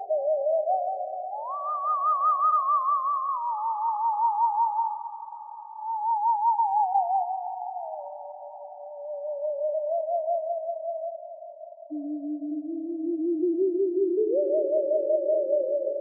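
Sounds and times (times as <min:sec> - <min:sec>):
theremin tone with vibrato: 0:00.0 - 0:16.0.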